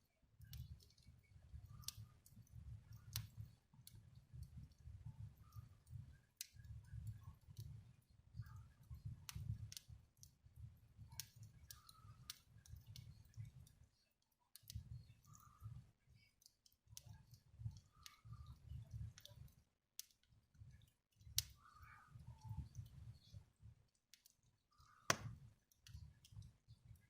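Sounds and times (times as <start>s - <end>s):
low rumble of flame: 0.3s - 13.9s, 17.0s - 19.5s, 20.6s - 23.8s
fire crackling and popping: 0.4s - 23.4s, 24.0s - 27.0s.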